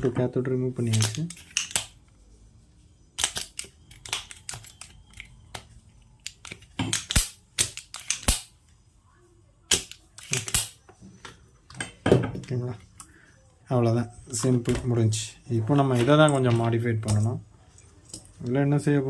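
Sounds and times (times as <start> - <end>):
hand tools clicking and snapping: 3.2 - 5.6, 6.2 - 8.5, 9.7 - 10.8.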